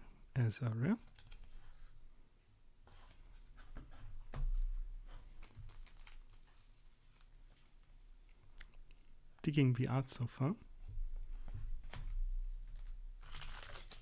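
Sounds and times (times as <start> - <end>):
plastic wrapping crinkling: 5.3 - 7.8, 11.2 - 14.0.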